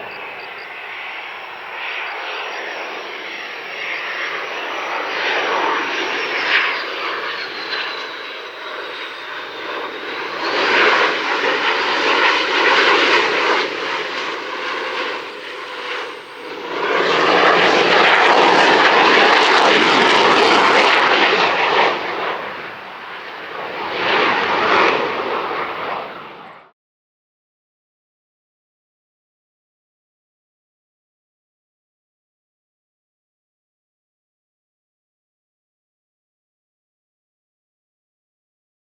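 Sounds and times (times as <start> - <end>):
high descending whine: 0.0 - 11.8
jet engines roaring: 0.0 - 26.7.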